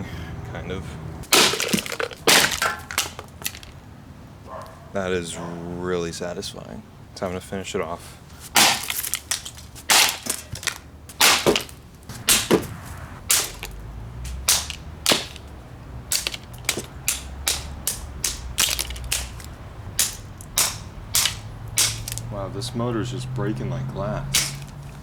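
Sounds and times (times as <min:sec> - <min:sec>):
steady low hum: 0:00.0 - 0:04.4, 0:06.8 - 0:23.2
blows smashing a desk fan: 0:01.2 - 0:03.8, 0:08.3 - 0:22.3, 0:24.3 - 0:25.0
plastic cracking and breaking: 0:01.2 - 0:03.8, 0:08.4 - 0:22.3, 0:24.3 - 0:25.0.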